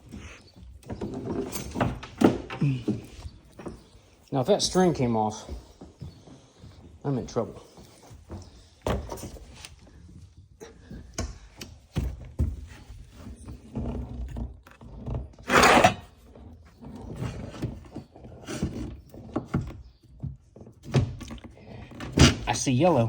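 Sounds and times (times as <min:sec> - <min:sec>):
cable handling knocks and scrapes: 0:00.0 - 0:04.1.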